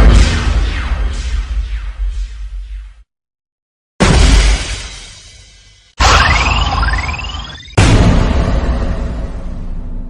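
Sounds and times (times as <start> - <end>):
rising whistle tones: 6.0 - 7.8
sudden hit: 7.8 - 10.0.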